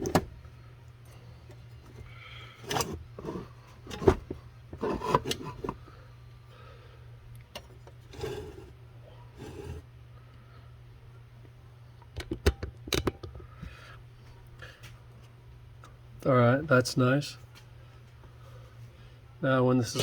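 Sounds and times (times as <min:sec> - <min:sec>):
steady low hum: 0:00.0 - 0:20.0
plastic parts clicking and knocking: 0:12.2 - 0:13.4.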